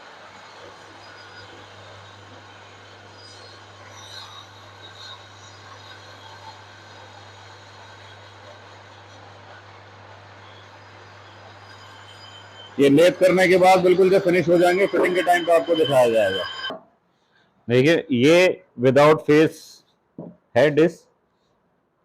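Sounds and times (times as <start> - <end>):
brake lathe humming: 0.0 - 16.8
faint high squeals: 0.0 - 17.5.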